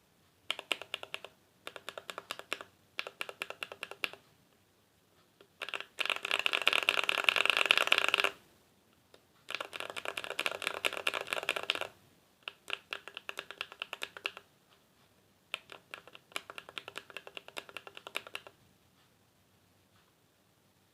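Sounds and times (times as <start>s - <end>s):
typing on mechanical keyboard: 0.5s - 4.2s, 5.4s - 8.4s, 9.5s - 14.5s, 15.5s - 18.6s.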